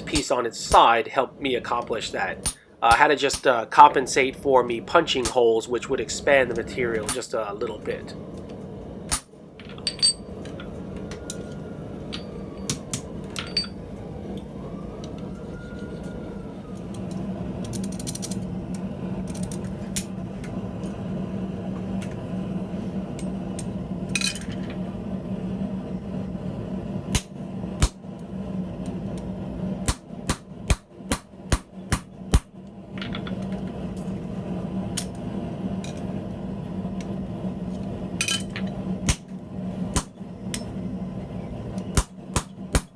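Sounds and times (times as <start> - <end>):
hammer striking hot steel: 0.0 - 1.0, 2.4 - 3.9, 5.1 - 5.7, 6.9 - 7.8, 9.1 - 10.6, 12.0 - 13.9, 27.1 - 28.0, 29.1 - 33.6, 38.2 - 39.3, 39.9 - 40.8, 41.8 - 42.9
steady hum: 0.0 - 42.9.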